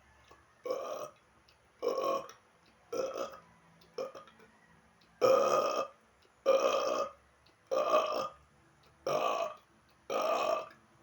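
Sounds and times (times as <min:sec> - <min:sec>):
man burping: 0:01.8 - 0:02.3, 0:03.0 - 0:03.4, 0:05.2 - 0:08.4, 0:09.1 - 0:10.8.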